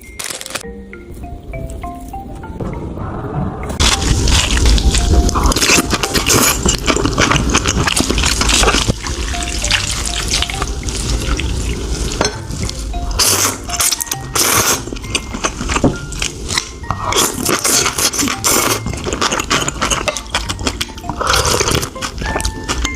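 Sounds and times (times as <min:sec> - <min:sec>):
light background music: 0:00.0 - 0:22.9
metal utensils clinking in bowl: 0:15.1 - 0:21.0.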